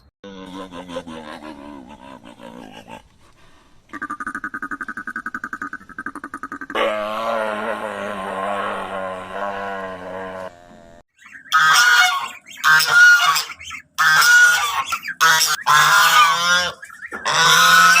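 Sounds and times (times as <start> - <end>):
low steady animal call: 3.9 - 18.0
geese honking: 11.2 - 18.0.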